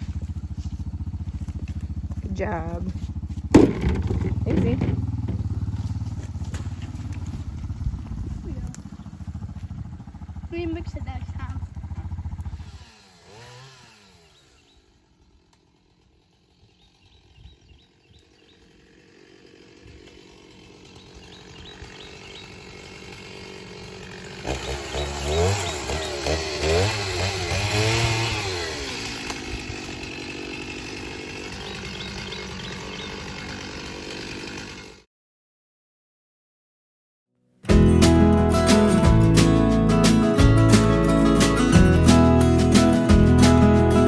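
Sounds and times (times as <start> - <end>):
small petrol engine revving: 0.0 - 15.4, 16.0 - 35.1.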